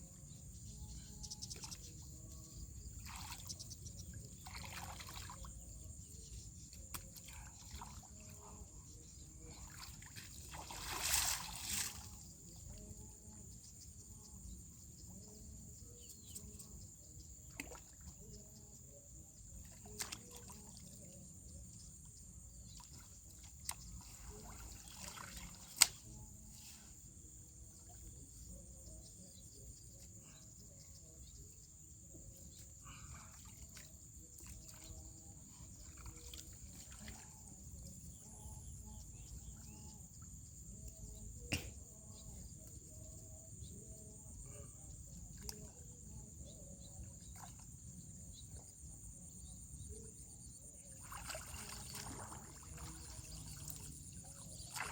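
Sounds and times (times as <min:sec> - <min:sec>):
water sloshing and trickling: 0:01.0 - 0:14.1, 0:17.3 - 0:41.3, 0:44.4 - 0:54.9
water splash: 0:09.8 - 0:12.1, 0:51.0 - 0:53.9.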